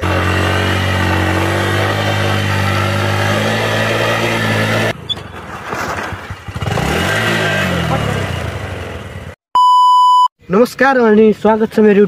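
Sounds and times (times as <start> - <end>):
motorcycle engine running: 0.0 - 5.0, 6.1 - 9.4.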